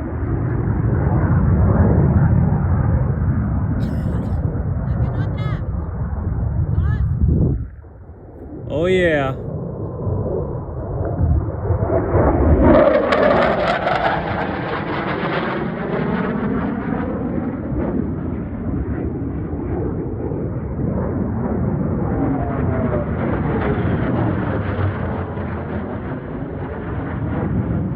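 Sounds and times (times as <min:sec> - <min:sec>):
jet roaring past: 0:00.0 - 0:27.9.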